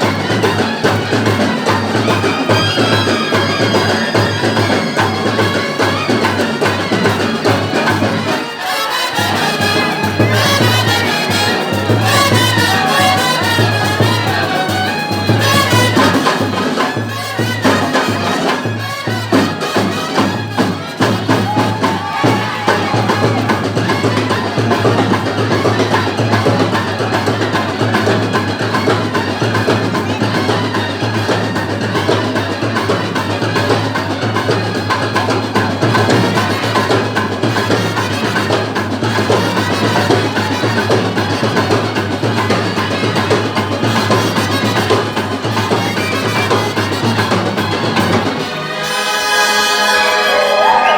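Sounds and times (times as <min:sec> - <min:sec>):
live band music: 0:00.0 - 0:50.9
steady drumming: 0:00.0 - 0:50.9.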